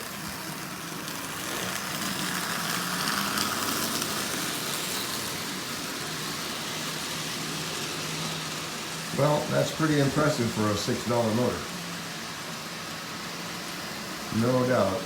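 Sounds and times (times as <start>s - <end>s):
toy train motor humming: 0.0s - 15.0s
toy train wheels rolling on track: 0.0s - 15.0s.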